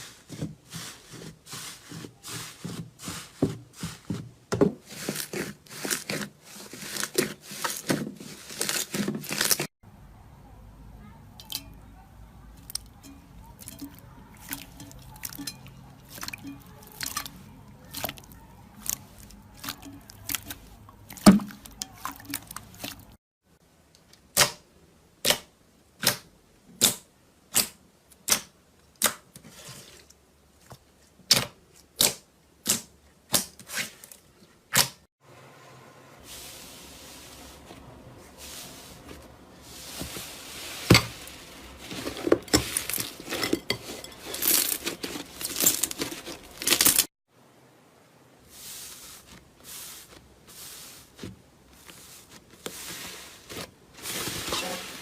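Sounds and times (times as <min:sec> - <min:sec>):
crinkly slime crackling: 0:00.0 - 0:04.2, 0:04.8 - 0:09.7, 0:13.5 - 0:23.2, 0:36.3 - 0:47.1, 0:48.7 - 0:55.0.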